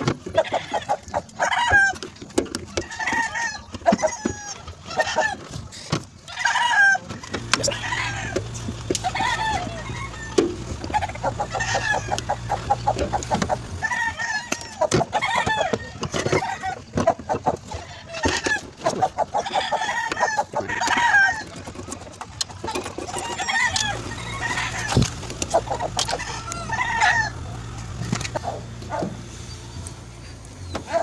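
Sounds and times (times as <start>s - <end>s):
chickens clucking: 0.0s - 31.0s
steady low hum: 7.2s - 15.2s, 18.6s - 31.0s.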